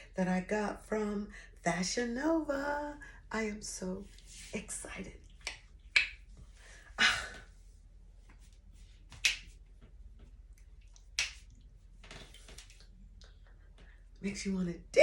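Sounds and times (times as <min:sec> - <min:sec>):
finger snaps: 0:05.4 - 0:06.2, 0:09.1 - 0:09.5, 0:10.9 - 0:11.6.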